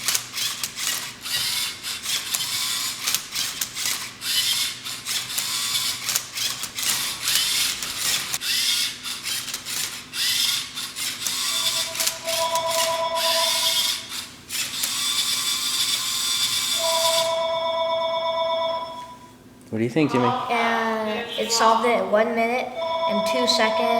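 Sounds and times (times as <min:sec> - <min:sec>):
steady high tone: 0:11.5 - 0:14.1, 0:16.8 - 0:19.3, 0:20.1 - 0:23.9.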